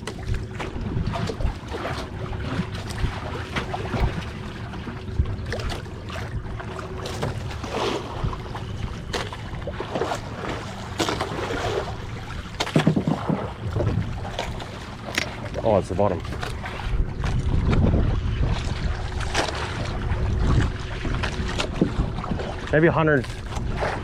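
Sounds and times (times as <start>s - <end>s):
small boat engine rumble: 0.0s - 24.0s
wind buffeting microphone: 0.0s - 24.0s.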